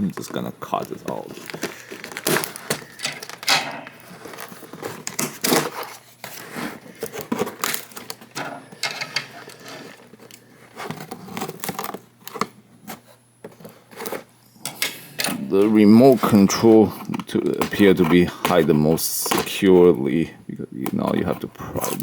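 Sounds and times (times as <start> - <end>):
plastic packaging snipping and crinkling: 0.1 - 12.6.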